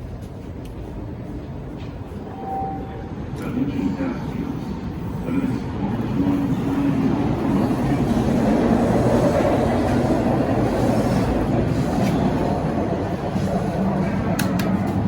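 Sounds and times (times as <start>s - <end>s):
train rumbling on tracks: 0.0s - 15.0s.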